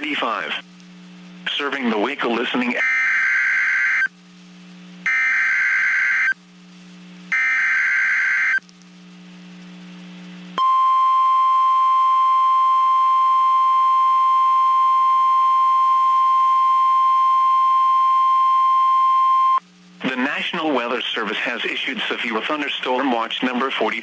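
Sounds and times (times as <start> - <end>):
steady weather radio alert tone: 1.5 - 4.1, 5.1 - 6.4, 7.3 - 8.6.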